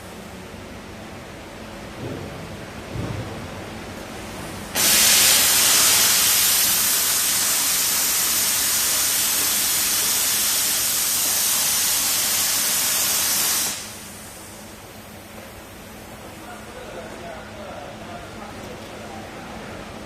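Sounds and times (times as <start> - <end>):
cutting torch hissing: 4.7 - 14.6.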